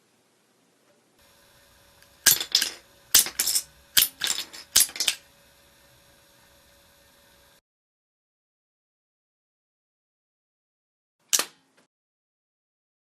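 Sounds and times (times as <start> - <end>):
rubber band gun snapping: 11.3 - 11.7.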